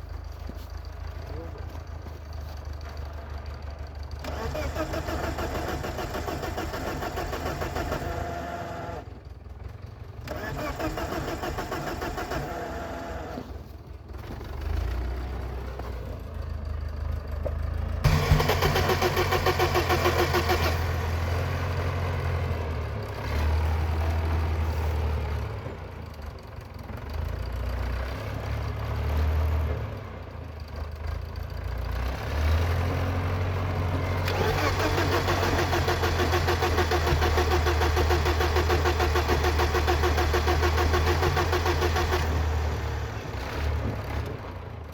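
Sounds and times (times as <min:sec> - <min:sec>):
car engine cranking on starter: 0:04.2 - 0:09.1, 0:10.2 - 0:13.5, 0:18.0 - 0:21.1, 0:34.2 - 0:42.6.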